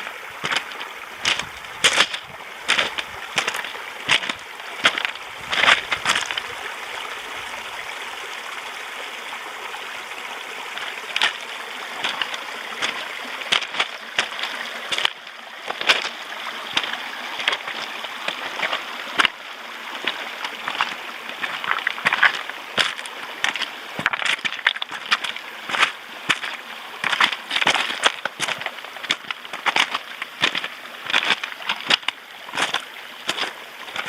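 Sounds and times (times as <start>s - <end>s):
stream running: 0.0s - 34.0s.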